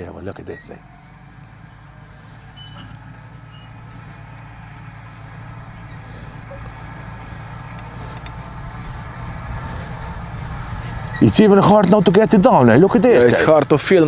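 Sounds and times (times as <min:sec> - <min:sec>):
wind buffeting microphone: 0:05.6 - 0:11.5
faint clicks: 0:07.6 - 0:08.4.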